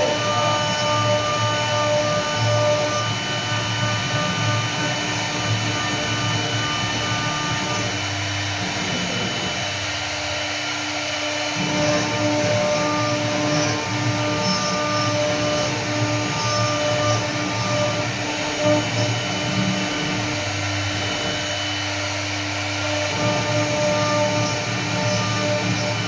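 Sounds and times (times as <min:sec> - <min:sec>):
router spindle whining: 0:00.0 - 0:26.0
wood cutting rumble: 0:00.0 - 0:26.0.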